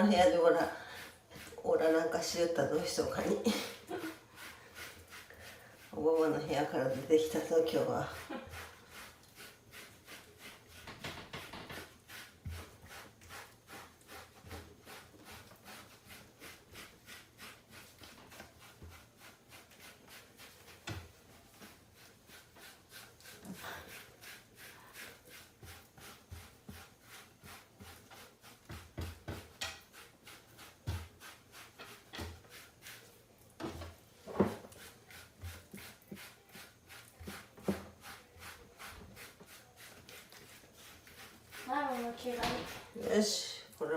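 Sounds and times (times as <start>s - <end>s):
brush raking through cat fur: 0.0s - 43.9s.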